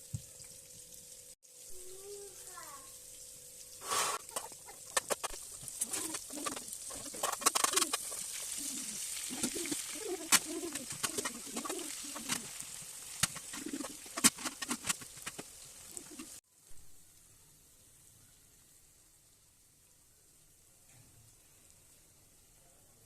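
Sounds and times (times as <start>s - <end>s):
food frying in a pan: 0.0s - 22.6s
pigeons cooing: 4.1s - 12.6s, 13.4s - 14.9s, 15.9s - 16.4s
utensil clicking against pan: 4.2s - 8.2s.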